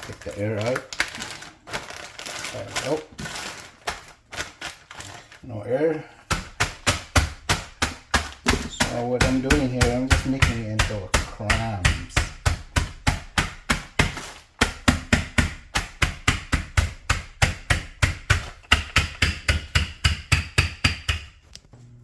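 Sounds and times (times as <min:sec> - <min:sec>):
pounding croutons in plastic bag: 0:00.0 - 0:05.5, 0:06.2 - 0:18.6.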